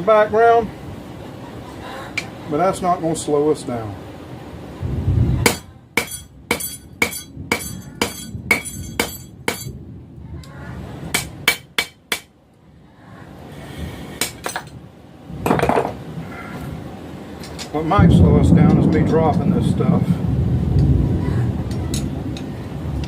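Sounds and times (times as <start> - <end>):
low rumble: 4.6 - 11.2, 17.8 - 23.0
hammer ringing on anvil: 5.5 - 9.7
metal clatter: 5.5 - 9.7.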